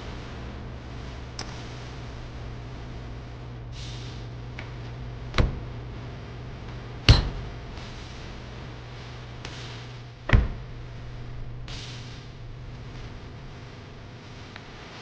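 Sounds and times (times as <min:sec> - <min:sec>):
steady low hum: 0:00.0 - 0:15.0
sharp knocks: 0:07.1 - 0:07.6.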